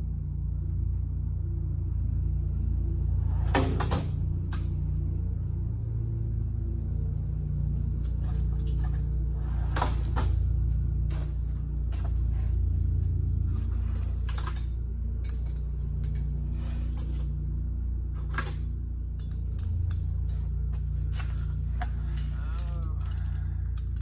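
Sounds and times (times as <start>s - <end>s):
metal parts and tools clicking: 13.8s - 24.0s.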